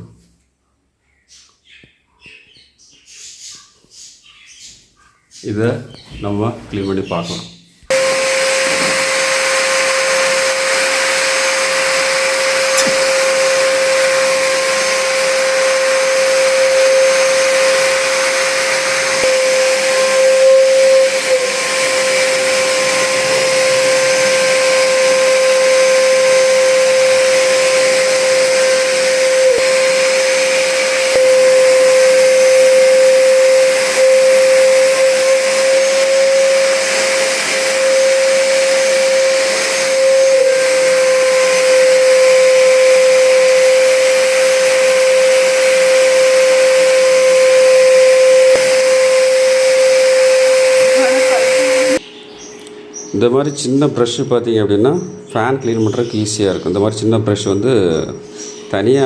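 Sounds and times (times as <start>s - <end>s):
vacuum cleaner whining: 7.9s - 52.1s.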